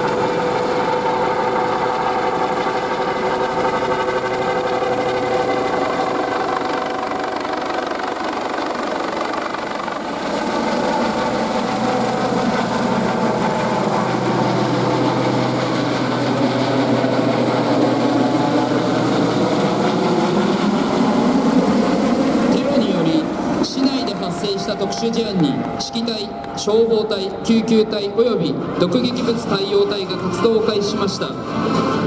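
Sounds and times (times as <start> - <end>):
vehicle engines humming: 11.2 - 32.0.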